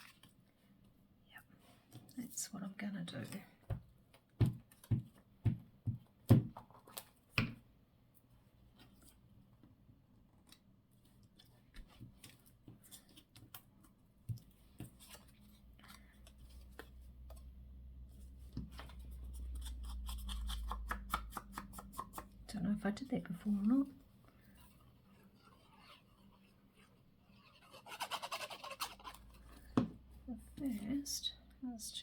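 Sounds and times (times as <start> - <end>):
scissors cutting paper: 19.6 - 20.9.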